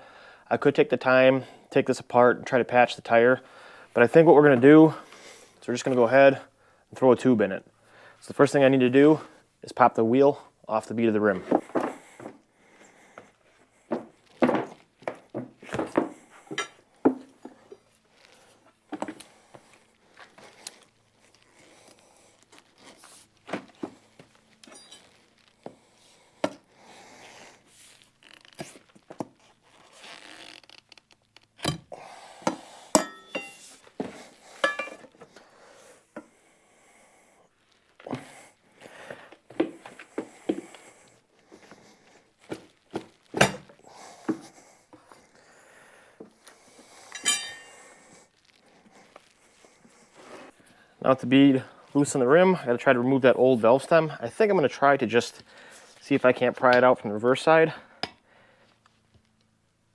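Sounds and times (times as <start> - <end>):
tools knocking and scraping tire: 13.9 - 17.9, 18.9 - 19.2, 31.6 - 35.4, 42.5 - 45.0, 47.1 - 47.8
ringing metal clinks: 33.0 - 33.7, 47.1 - 47.8.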